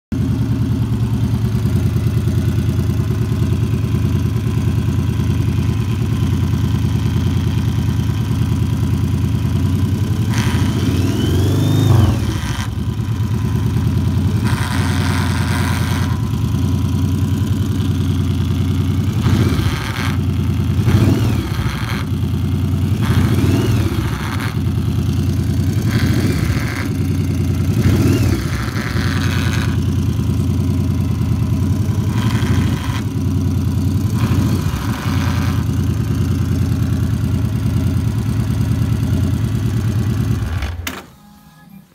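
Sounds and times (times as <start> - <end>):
motorcycle engine idling and revving: 0.1 - 41.7
buzz from engine: 10.0 - 30.5, 31.1 - 33.4, 34.0 - 37.0.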